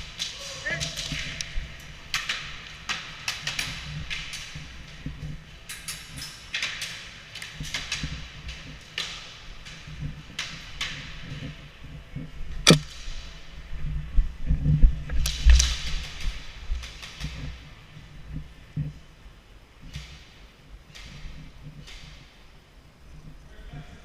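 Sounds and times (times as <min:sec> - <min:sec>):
airsoft gun shots: 0:12.7 - 0:12.9.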